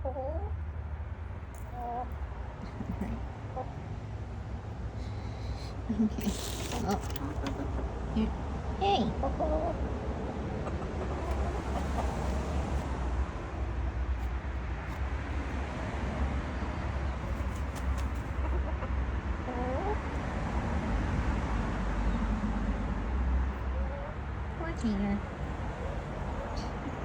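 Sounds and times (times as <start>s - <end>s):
chickens clucking: 0.0s - 0.6s, 1.5s - 12.9s, 16.6s - 20.2s, 23.5s - 24.3s.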